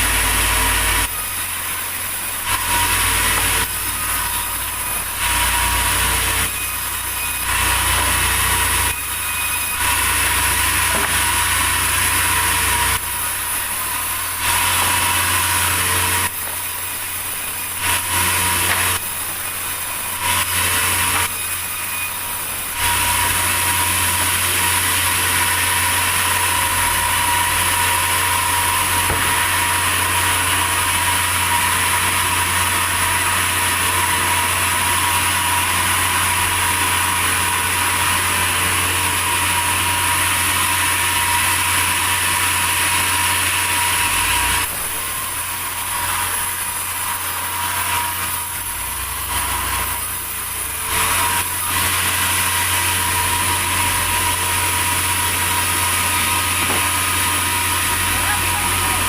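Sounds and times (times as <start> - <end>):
mill engine hum: 44.0 - 59.0.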